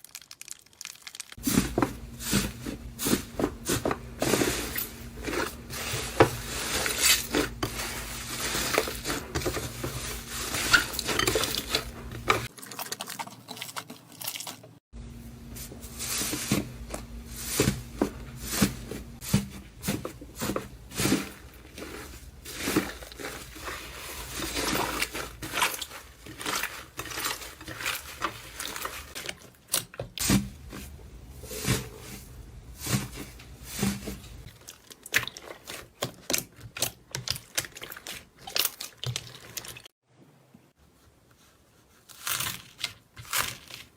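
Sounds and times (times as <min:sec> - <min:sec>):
slime squishing and popping: 0:00.0 - 0:01.4.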